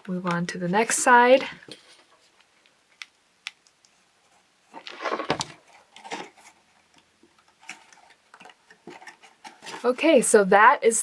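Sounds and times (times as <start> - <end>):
paper rustling and crinkling: 4.7 - 6.6.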